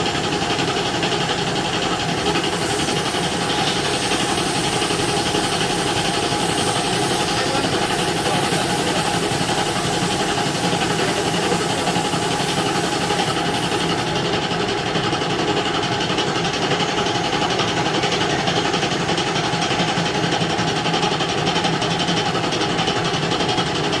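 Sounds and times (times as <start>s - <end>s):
machine humming: 1.3s - 14.2s.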